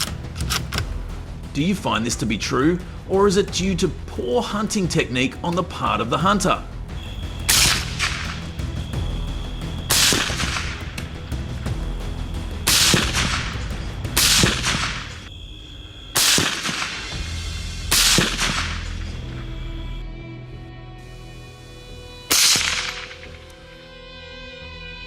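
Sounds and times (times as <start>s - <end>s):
background music with held tones: 0.0s - 15.3s, 17.1s - 25.0s
rifle shots with echo: 9.9s - 10.8s, 16.2s - 17.1s, 17.9s - 19.0s, 22.3s - 23.3s.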